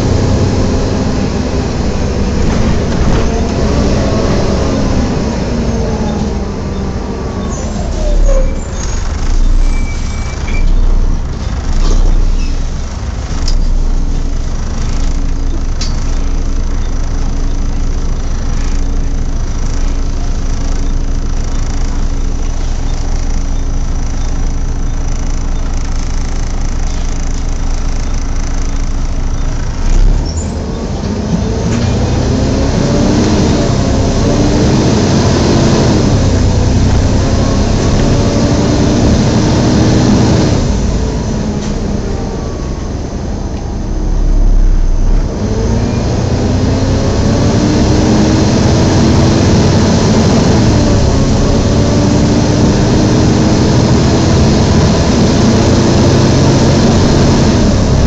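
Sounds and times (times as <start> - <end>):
bus engine: 0.0 - 58.0
low thumps: 1.8 - 5.6.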